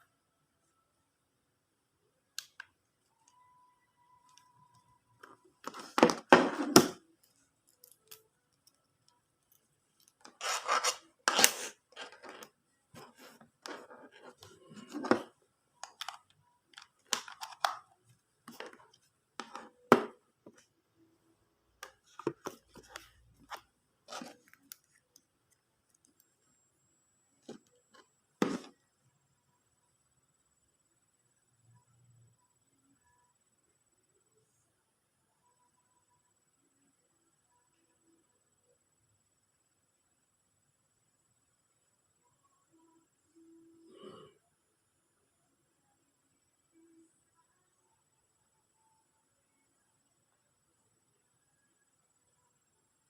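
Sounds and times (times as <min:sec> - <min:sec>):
handling scrapes rubs and clicks: 0:10.0 - 0:16.2, 0:21.8 - 0:25.1.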